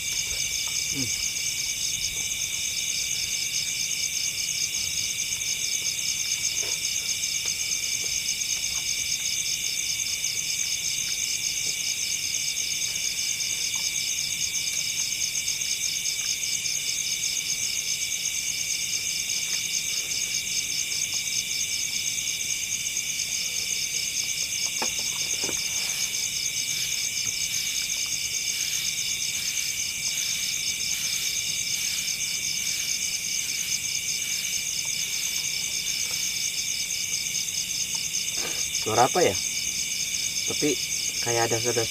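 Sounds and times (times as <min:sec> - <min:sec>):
insects trilling: 0:00.0 - 0:41.9.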